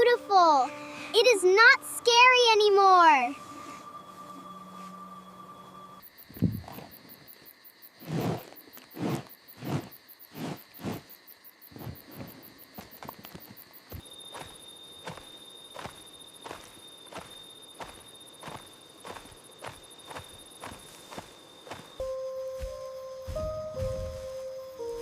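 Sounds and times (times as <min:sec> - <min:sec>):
crickets chirping: 0:00.0 - 0:25.0
heavy dull thuds: 0:06.3 - 0:06.9.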